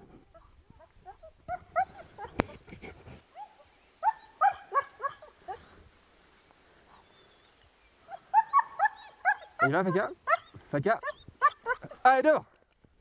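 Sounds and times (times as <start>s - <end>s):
dog yipping and whining: 0.4s - 2.5s, 3.4s - 5.6s, 8.2s - 11.9s.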